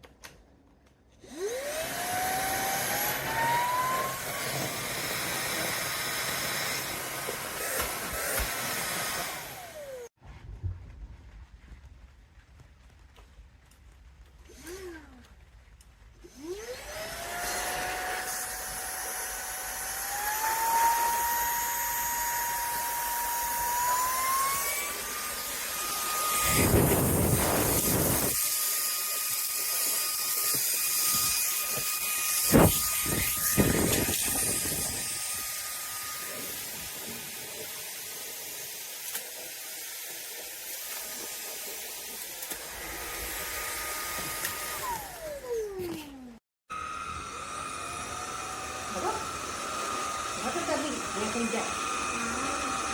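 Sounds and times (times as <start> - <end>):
stick vacuum motor whine: 1.2 - 10.1, 16.3 - 37.3, 41.7 - 46.0, 46.7 - 52.9.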